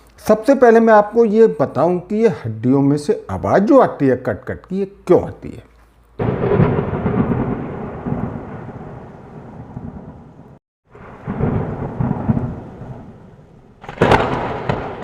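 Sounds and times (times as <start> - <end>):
thunder-like rumbling: 6.2 - 15.0.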